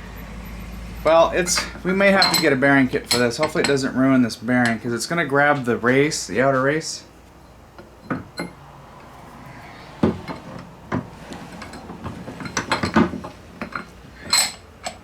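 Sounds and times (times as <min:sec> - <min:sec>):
ringing metal clink: 0:01.4 - 0:03.9
steel tools clinking and knocking: 0:01.4 - 0:04.0, 0:07.4 - 0:09.1, 0:10.0 - 0:15.0.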